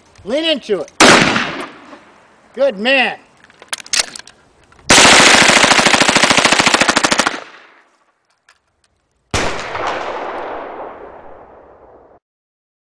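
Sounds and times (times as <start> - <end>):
automatic gunfire burst: 1.0 - 1.7, 4.9 - 7.6
single loud gunshot: 1.0 - 1.9.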